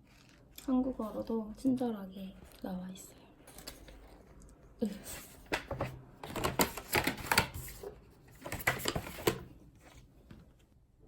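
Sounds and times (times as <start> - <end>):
paper pages rustling: 3.6 - 10.1.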